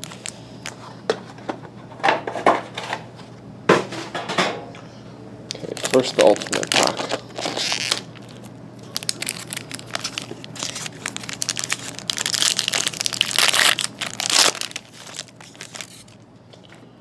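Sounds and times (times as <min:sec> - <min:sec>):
card pack wrapper crinkling: 0:00.0 - 0:00.8, 0:05.5 - 0:16.2.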